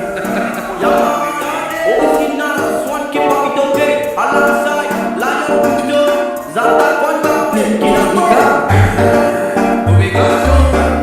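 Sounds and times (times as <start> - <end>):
sliding melodic line: 0.0 - 11.0
low bass thumps: 8.7 - 9.1, 9.9 - 11.0.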